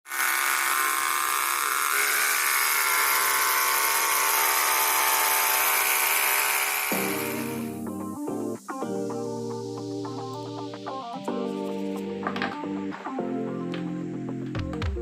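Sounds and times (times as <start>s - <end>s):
power tool motor whining: 0.1s - 7.8s.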